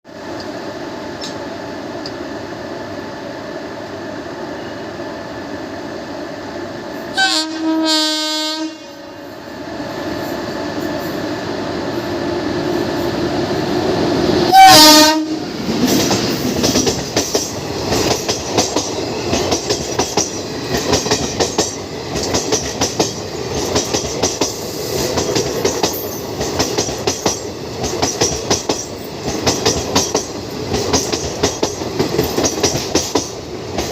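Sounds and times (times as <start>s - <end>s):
train rumbling: 0.1s - 33.9s
train horn blasts: 7.1s - 9.4s, 14.5s - 15.5s
wheels clacking over rail joints: 15.7s - 33.9s.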